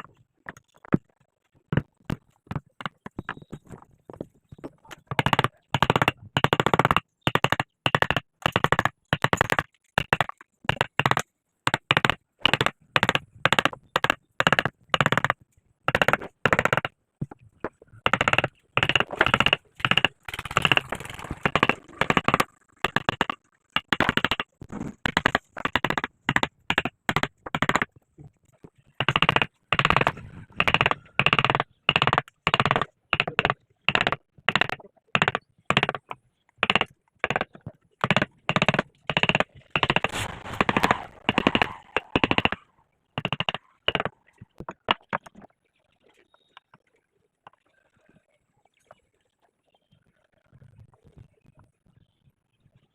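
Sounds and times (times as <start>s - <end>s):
mallet striking chisel: 29.0s - 42.6s.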